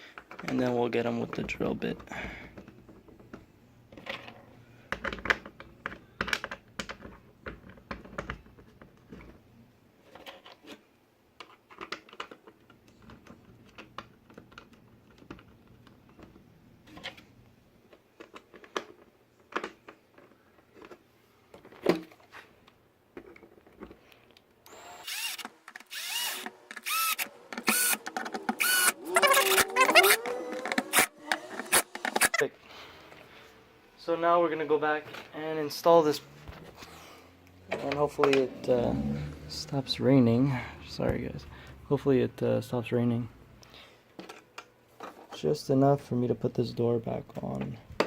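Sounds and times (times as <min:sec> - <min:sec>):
power drill driving screws: 0:24.7 - 0:32.4
screws clicking and tapping: 0:24.7 - 0:32.4.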